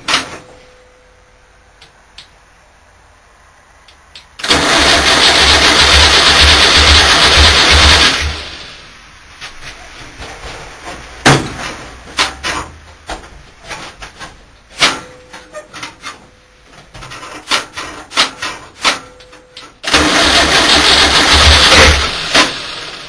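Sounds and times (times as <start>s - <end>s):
van engine starting and running: 0.0s - 23.0s.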